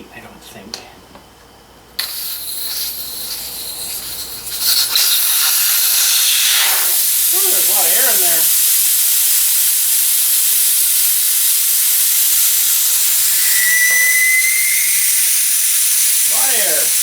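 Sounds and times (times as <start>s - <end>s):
air hissing out of tire: 2.0s - 17.0s
thin whistle: 12.1s - 17.0s.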